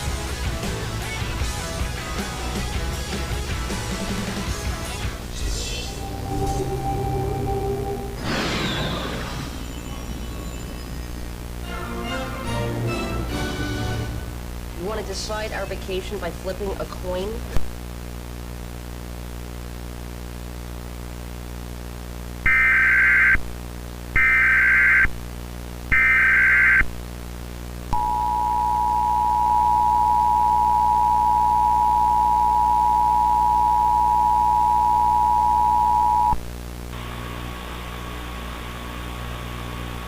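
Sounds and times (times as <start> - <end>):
static hiss: 3.8 - 40.0
low electrical buzz: 5.0 - 40.0
screeching digital header bursts: 25.9 - 26.8
two-tone attention signal: 28.0 - 36.4.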